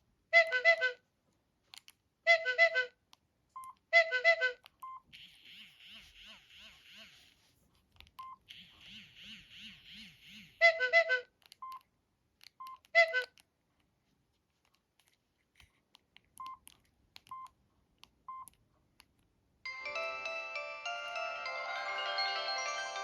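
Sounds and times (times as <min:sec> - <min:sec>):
keypad beeps: 0:11.6 - 0:11.8, 0:16.4 - 0:17.5
polyphonic ringtone melody: 0:19.7 - 0:23.0.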